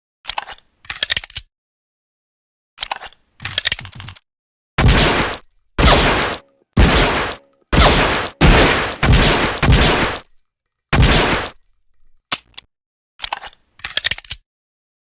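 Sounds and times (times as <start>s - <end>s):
pistol shots with ringing tail: 4.8s - 11.7s.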